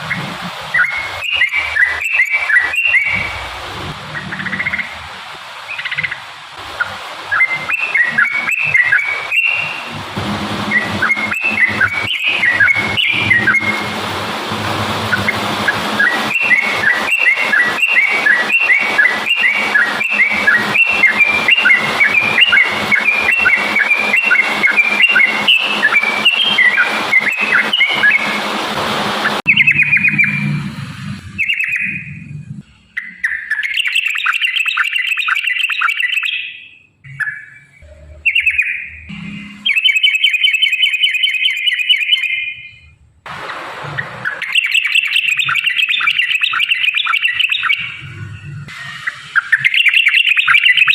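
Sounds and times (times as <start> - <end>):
bird singing fast repeated notes: 0.0 - 42.9, 43.8 - 50.9
steady hiss: 2.5 - 29.4, 43.3 - 44.5.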